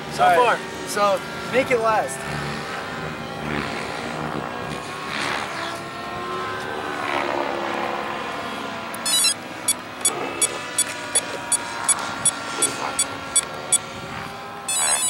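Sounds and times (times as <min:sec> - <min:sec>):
model helicopter rotor whine: 0:00.0 - 0:15.0
short high beeps: 0:09.0 - 0:09.4, 0:14.7 - 0:15.0
regular high ticking: 0:09.0 - 0:09.8.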